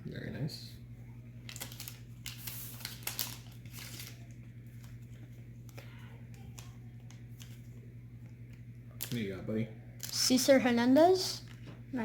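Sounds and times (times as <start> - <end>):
low steady hum: 0.0 - 12.0
trading cards being flipped: 1.5 - 5.1.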